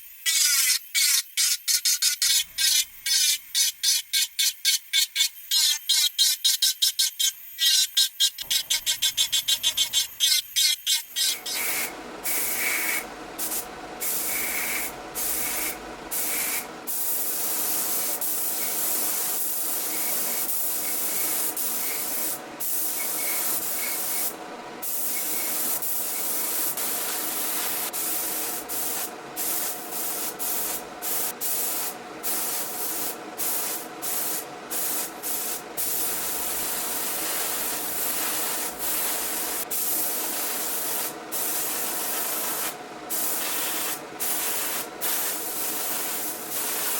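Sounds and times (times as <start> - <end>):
spray gun hissing: 11.4 - 46.9.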